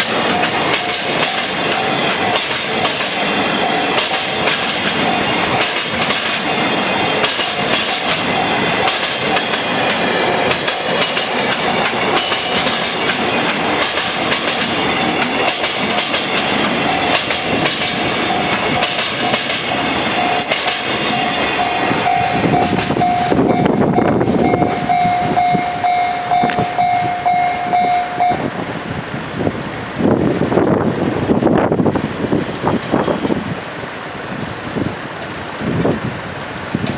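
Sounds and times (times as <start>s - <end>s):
crossing warning bell: 0.0s - 28.6s.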